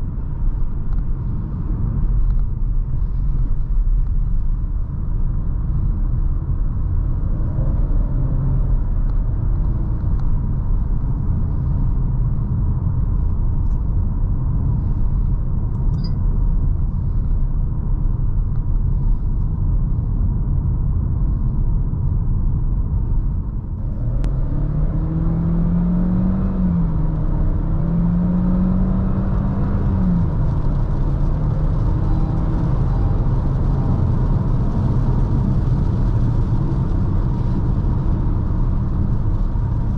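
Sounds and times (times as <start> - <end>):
car engine accelerating: 0.0 - 19.2, 22.9 - 39.9
road and tyre rumble: 0.0 - 39.9.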